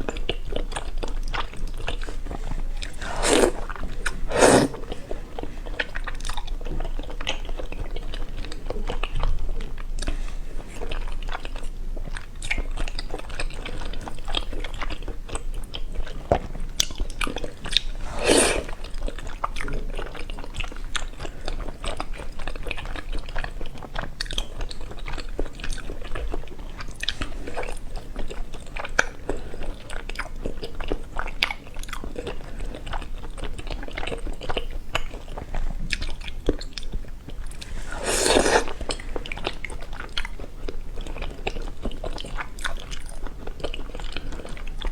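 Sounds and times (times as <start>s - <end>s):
chewing and crunchy bites: 0.0s - 44.9s
slurps: 2.0s - 5.9s, 17.7s - 18.9s, 37.4s - 39.5s.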